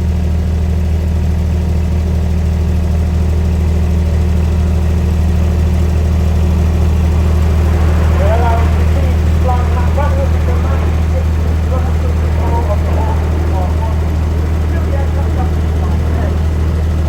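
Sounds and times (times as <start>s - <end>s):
engine humming steadily: 0.0s - 17.0s.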